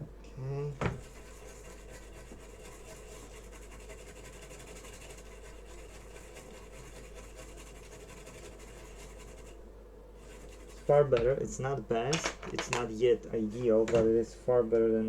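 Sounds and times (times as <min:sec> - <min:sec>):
brush scrubbing circuit board: 0:00.9 - 0:09.6, 0:10.2 - 0:11.8.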